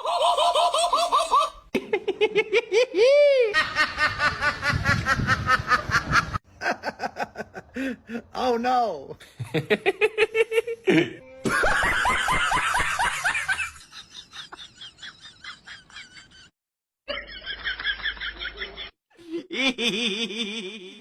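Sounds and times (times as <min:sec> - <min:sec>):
people laughing: 0:00.0 - 0:08.2, 0:09.3 - 0:16.5, 0:17.1 - 0:21.0.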